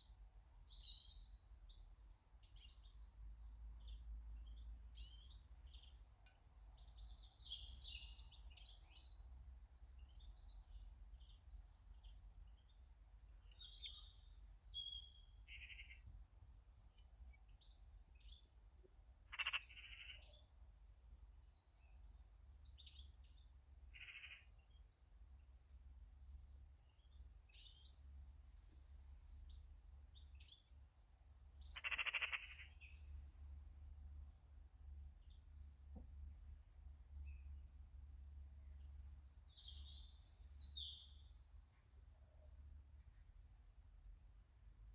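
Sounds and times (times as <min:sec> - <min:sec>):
small birds chirping: 0:00.0 - 0:44.9.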